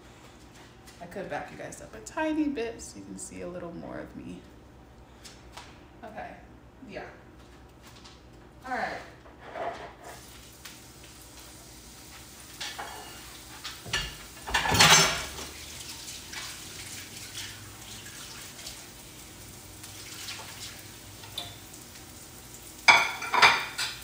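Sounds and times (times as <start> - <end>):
running water: 10.2 - 23.8
pots and dishes clattering: 12.5 - 16.5, 21.2 - 21.7, 22.8 - 24.0.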